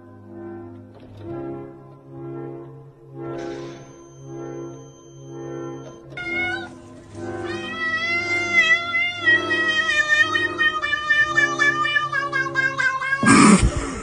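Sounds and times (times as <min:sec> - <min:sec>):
cat yowling: 0:06.2 - 0:06.8, 0:07.4 - 0:13.8.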